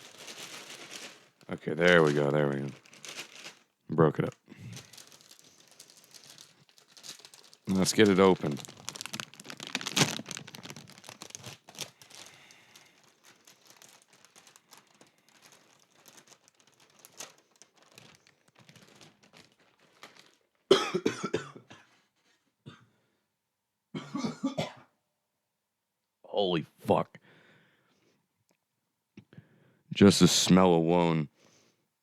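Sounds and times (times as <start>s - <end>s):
plastic bag crinkling: 0.0s - 20.7s
person coughing: 20.7s - 21.9s, 24.0s - 24.9s.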